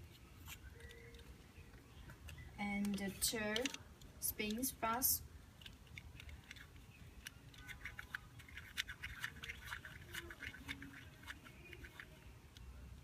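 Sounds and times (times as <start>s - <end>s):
fidget cube dial clicking: 2.3s - 4.8s, 5.6s - 12.7s.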